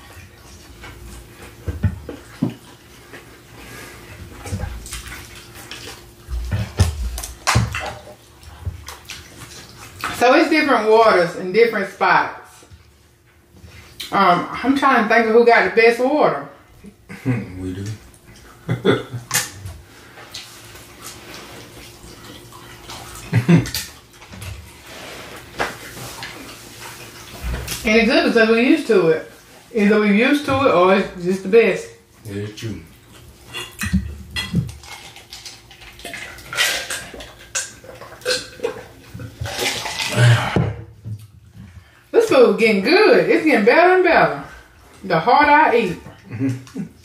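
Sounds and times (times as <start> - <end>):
chewing and mouth smacks: 19.2 - 24.8, 32.9 - 40.2.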